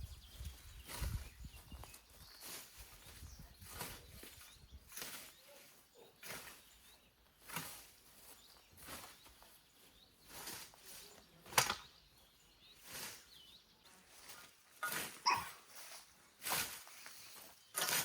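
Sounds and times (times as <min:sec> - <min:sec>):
scythe swishing through grass: 0:00.8 - 0:01.2, 0:02.4 - 0:09.5, 0:10.2 - 0:11.8, 0:12.8 - 0:13.4, 0:14.1 - 0:18.0.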